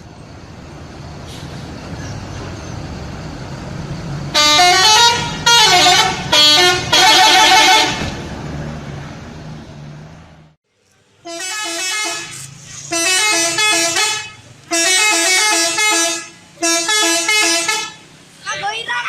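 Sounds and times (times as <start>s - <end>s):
bus engine: 0.0s - 19.0s
bus musical horn tune: 4.3s - 8.2s, 11.2s - 18.1s.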